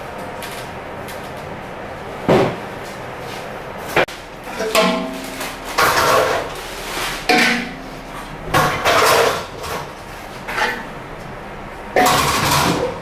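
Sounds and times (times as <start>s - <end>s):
metal kitchenware clattering: 4.6s - 6.6s, 7.3s - 7.9s, 8.5s - 9.9s, 12.0s - 13.0s.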